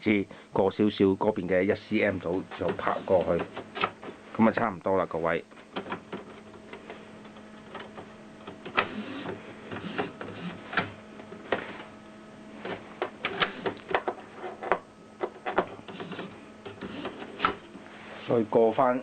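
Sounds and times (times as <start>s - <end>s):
faint steady hum: 0.0s - 19.0s.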